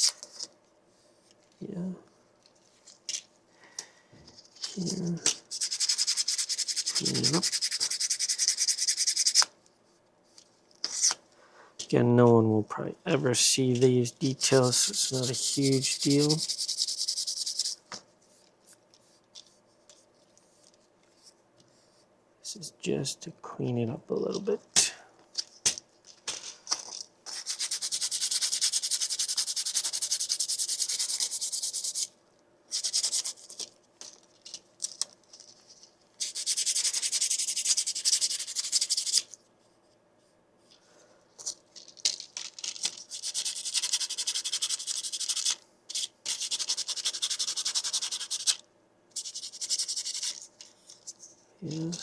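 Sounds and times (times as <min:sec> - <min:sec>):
sandpaper rasping on plastic: 0:04.8 - 0:09.5, 0:14.2 - 0:17.8, 0:27.3 - 0:33.6, 0:36.2 - 0:39.3, 0:42.8 - 0:48.6, 0:49.2 - 0:50.4.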